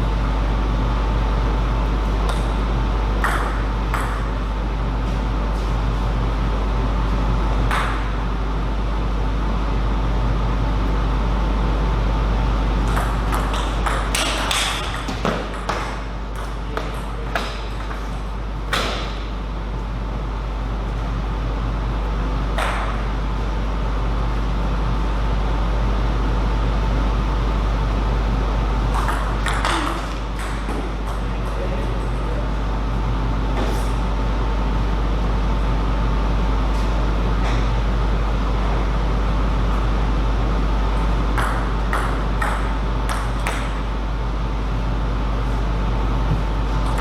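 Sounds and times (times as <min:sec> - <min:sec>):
table tennis ball hits: 0:03.2 - 0:04.4, 0:07.7 - 0:08.2, 0:12.8 - 0:18.1, 0:22.6 - 0:23.0, 0:28.9 - 0:31.6, 0:41.4 - 0:43.8.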